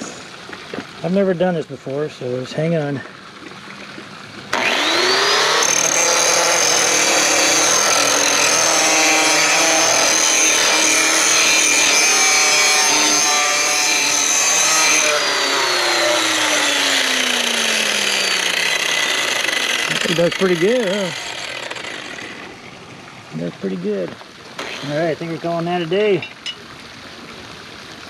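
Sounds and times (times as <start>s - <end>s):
electric grinder motor whine: 4.5s - 22.8s, 24.6s - 25.2s
harsh grinding on metal blade: 4.6s - 22.6s, 24.6s - 25.4s.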